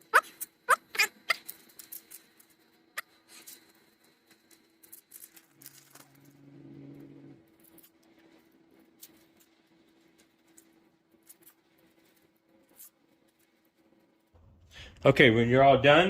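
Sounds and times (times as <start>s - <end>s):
velcro scraps rustling and clicking: 0.1s - 6.4s, 7.6s - 13.9s
low hum: 5.4s - 8.4s, 14.4s - 16.0s.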